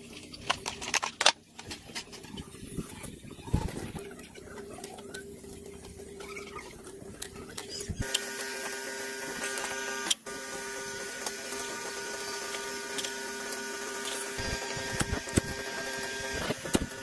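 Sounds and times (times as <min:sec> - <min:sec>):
small motor whining: 0:06.0 - 0:17.0.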